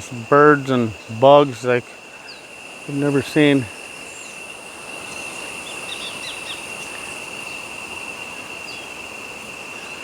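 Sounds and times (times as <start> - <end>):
insect drone: 0.0 - 10.0
steady hiss: 0.0 - 10.0
bird chirps: 2.1 - 2.5, 5.0 - 9.0.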